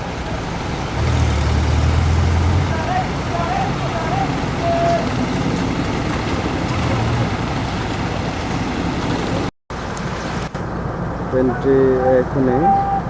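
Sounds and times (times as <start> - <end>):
station noise: 2.5 - 9.5
diesel train engine idling: 2.5 - 10.0.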